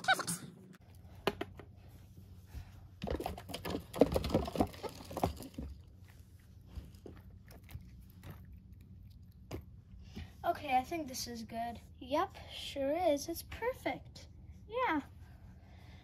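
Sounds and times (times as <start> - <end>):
toys clicking and rattling: 3.0 - 5.9.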